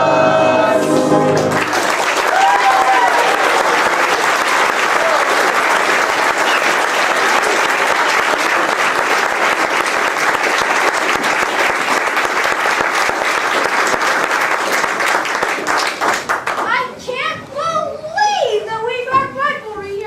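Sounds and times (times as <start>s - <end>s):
audience applauding: 0.8s - 16.8s.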